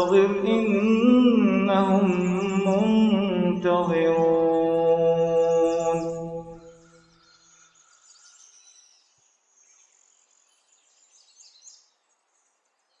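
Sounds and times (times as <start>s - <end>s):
man reciting: 0.0s - 6.8s
small birds twittering: 2.3s - 13.0s.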